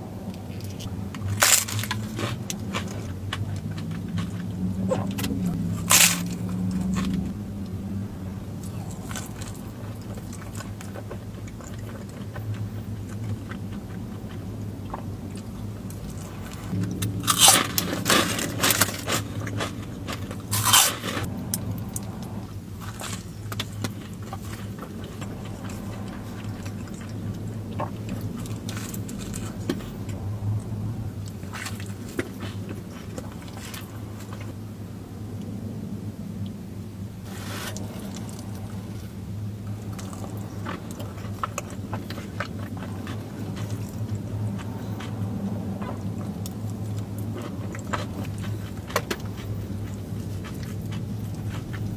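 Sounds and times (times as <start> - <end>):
steady low hum: 0.0 - 51.9
person chewing crunchy food: 0.1 - 34.6, 37.2 - 51.9.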